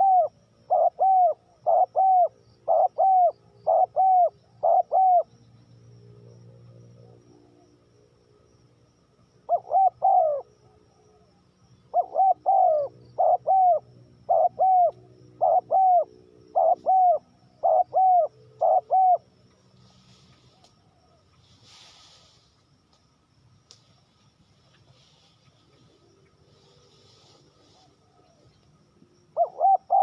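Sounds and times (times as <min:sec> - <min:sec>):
dove cooing: 0:00.0 - 0:05.3, 0:09.5 - 0:11.3, 0:11.9 - 0:19.3, 0:29.3 - 0:30.0.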